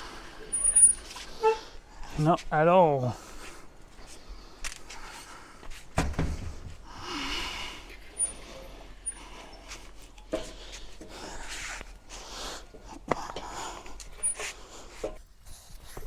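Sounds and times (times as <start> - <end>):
heavy thump: 5.9 - 7.0
man breathing hard and snorting: 6.7 - 15.9.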